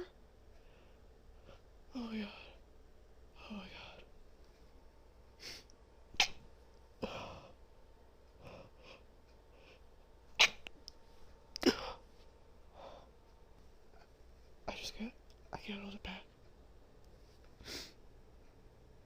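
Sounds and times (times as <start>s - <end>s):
woman breathing: 0.5s - 2.6s, 7.0s - 7.6s, 8.3s - 10.0s, 11.0s - 13.2s, 17.6s - 18.0s
woman sneezing: 10.4s - 10.7s, 11.6s - 12.0s.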